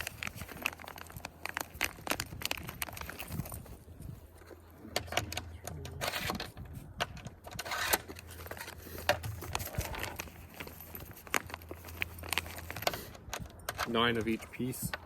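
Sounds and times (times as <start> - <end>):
rustling: 0.0 - 6.9, 7.6 - 14.6
metal bolts and washers clinking: 7.2 - 15.0.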